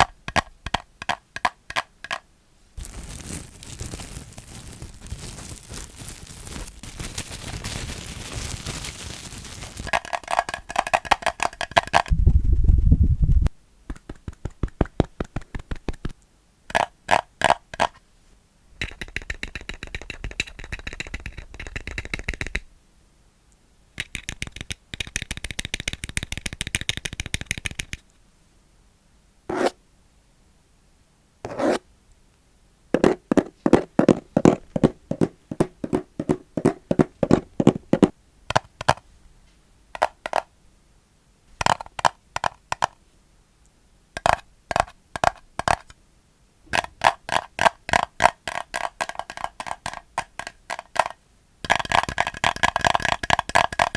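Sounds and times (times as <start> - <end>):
plastic crackling and scraping: 2.8 - 12.1.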